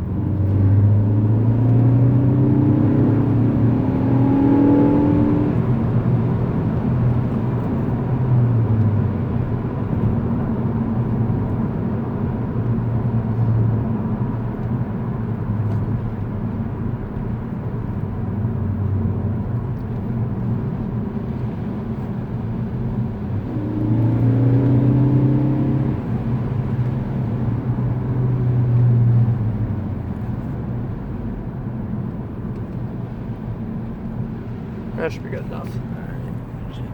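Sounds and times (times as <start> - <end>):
car engine revving while driving: 0.0 - 36.9.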